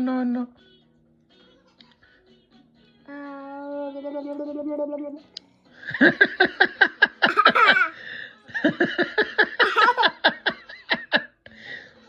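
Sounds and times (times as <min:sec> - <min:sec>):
person laughing: 0:07.3 - 0:07.9, 0:09.6 - 0:10.1.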